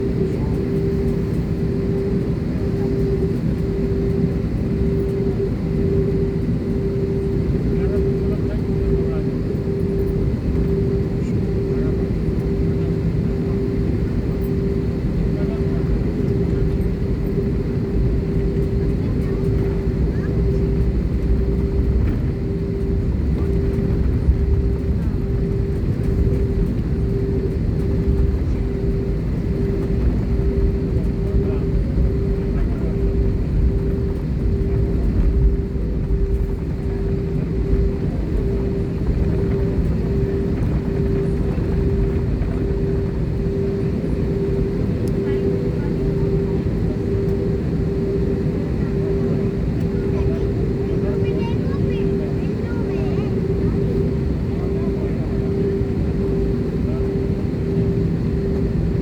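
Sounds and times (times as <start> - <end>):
airliner engines rumbling: 0.0 - 59.0
cabin hum: 17.3 - 50.4.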